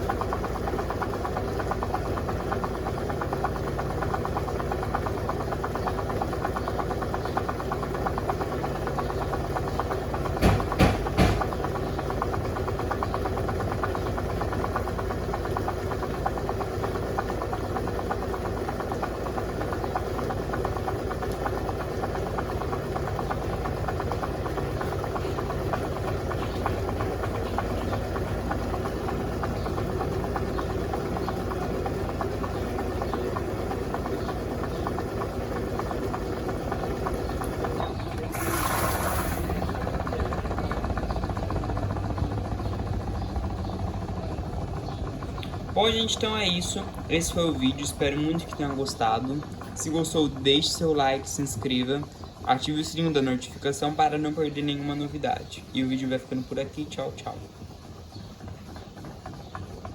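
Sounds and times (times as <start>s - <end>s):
washing machine motor hum: 0.0s - 59.9s
quick knocks: 10.4s - 11.6s.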